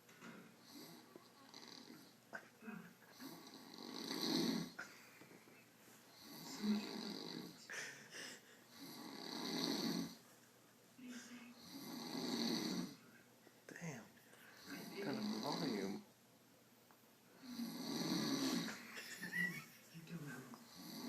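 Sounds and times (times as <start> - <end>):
man snoring: 3.1 - 4.8, 6.1 - 7.6, 8.7 - 10.2, 11.6 - 13.0, 14.6 - 16.0, 17.4 - 18.8, 20.7 - 21.0.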